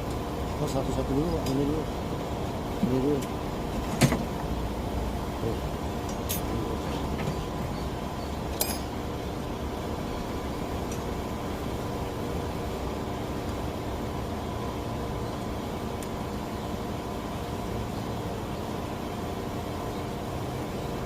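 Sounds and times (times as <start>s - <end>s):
welding equipment humming and hissing: 0.0s - 21.0s.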